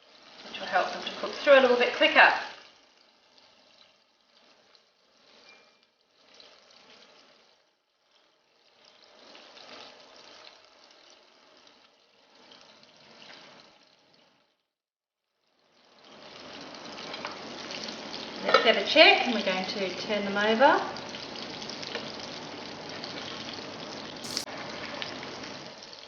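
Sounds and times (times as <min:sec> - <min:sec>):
meatballs sizzling in a frying pan: 0:00.0 - 0:03.2, 0:15.8 - 0:26.0.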